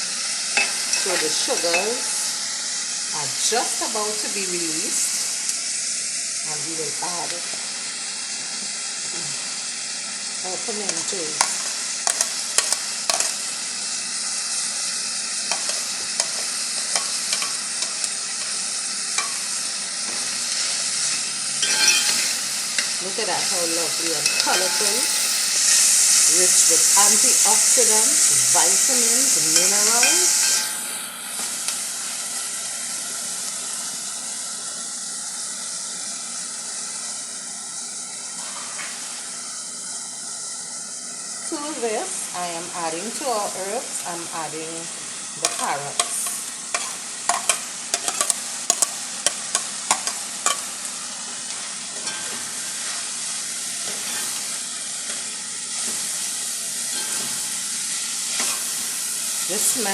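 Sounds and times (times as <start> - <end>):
vegetables sizzling in a frying pan: 0.0 - 59.9
utensil clicking against pan: 45.4 - 50.6.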